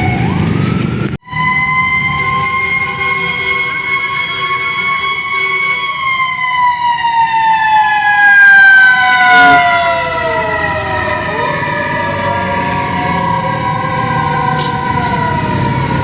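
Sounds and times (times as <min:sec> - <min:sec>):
fire truck sirens: 0:00.0 - 0:16.0.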